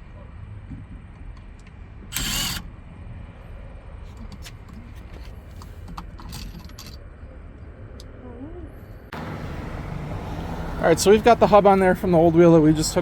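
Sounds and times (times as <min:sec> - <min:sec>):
cordless drill spinning: 0:02.1 - 0:02.6
screws and tools clinking: 0:02.2 - 0:02.6.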